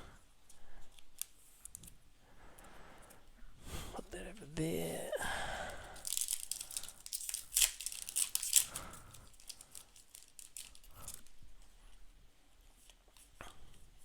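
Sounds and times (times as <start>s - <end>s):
foil wrapper crinkling and tearing: 5.8s - 11.4s.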